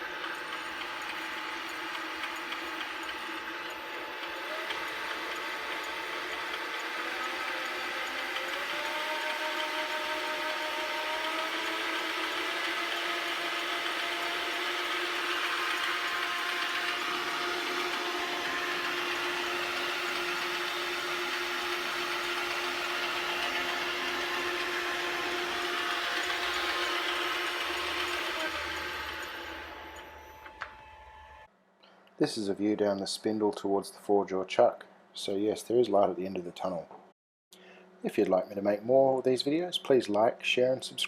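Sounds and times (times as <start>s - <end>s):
lathe motor whining: 0.0s - 31.5s.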